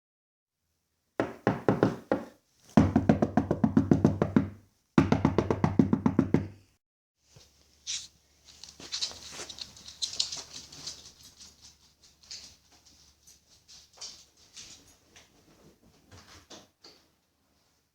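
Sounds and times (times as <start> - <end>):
rapid knocking on door: 1.2 - 6.6.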